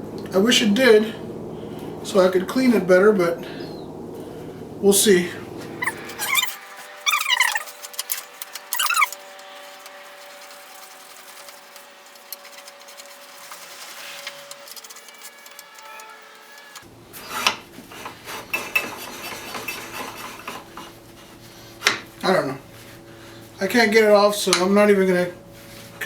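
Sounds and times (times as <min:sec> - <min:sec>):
metal squeaks: 0:05.8 - 0:16.8.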